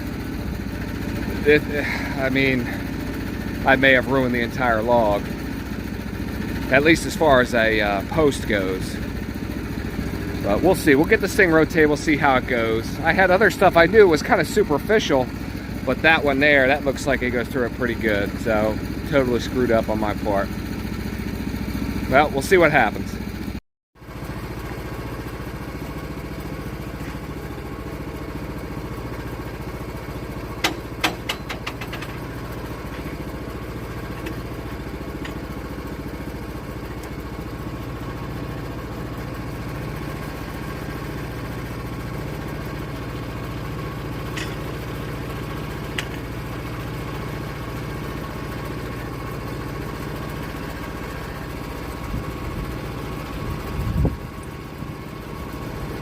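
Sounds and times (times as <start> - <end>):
engine running steadily: 0.0 - 56.0
sharp metallic knocks: 30.6 - 32.2.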